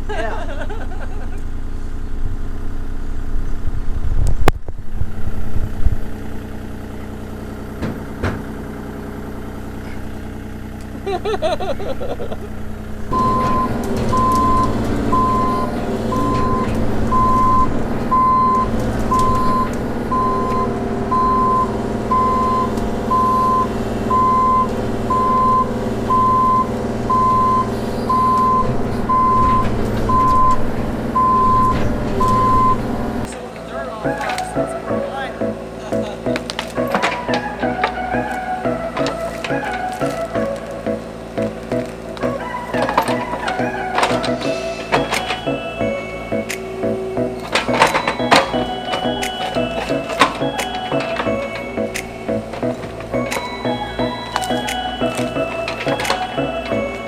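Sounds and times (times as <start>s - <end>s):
diesel engine running: 0.0s - 57.0s
backup alarm beeping: 13.1s - 33.3s, 34.0s - 57.0s.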